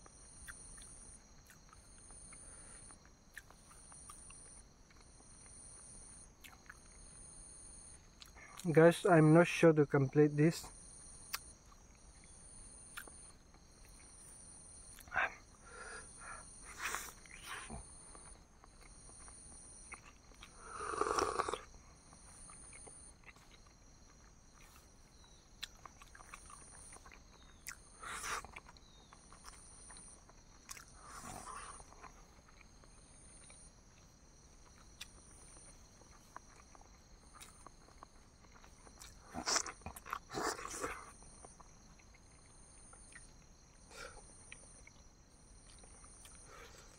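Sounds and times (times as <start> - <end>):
person chewing and swallowing: 0.4 - 5.3, 6.4 - 7.0, 8.2 - 8.7, 12.9 - 14.1, 16.6 - 46.9
mouth and throat sounds: 19.8 - 21.7, 25.6 - 29.6, 30.7 - 32.7, 36.2 - 42.3.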